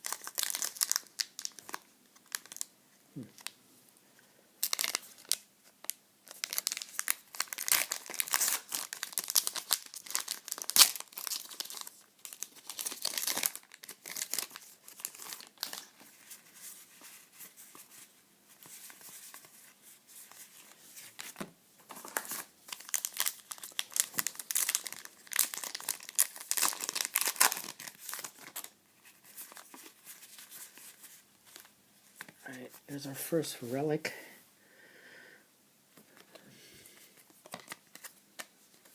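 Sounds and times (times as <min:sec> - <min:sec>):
wrappers tearing and crinkling: 0:00.0 - 0:02.7, 0:04.6 - 0:05.4, 0:06.3 - 0:16.0, 0:22.0 - 0:31.7.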